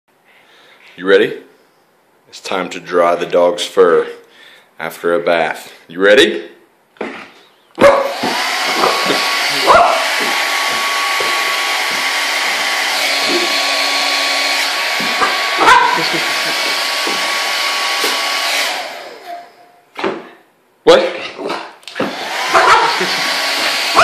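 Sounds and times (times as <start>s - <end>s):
dog barking: 7.8s - 10.3s, 15.2s - 16.1s, 22.5s - 23.0s
hair dryer running: 7.9s - 19.6s, 21.9s - 24.0s.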